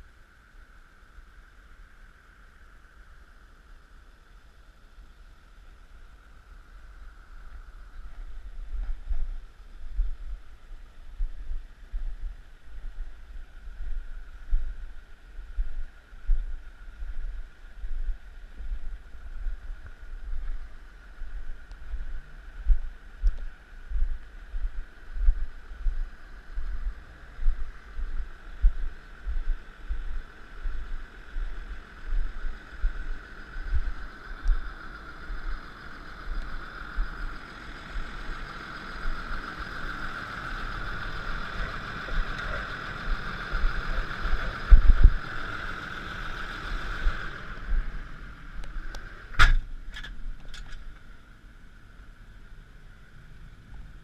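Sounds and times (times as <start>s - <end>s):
steady whine: 0.0s - 54.0s
tractor running: 0.0s - 54.0s.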